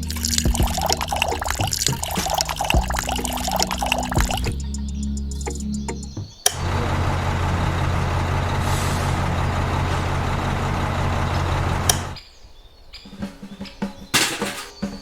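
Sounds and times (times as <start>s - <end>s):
truck engine running: 6.6s - 12.2s.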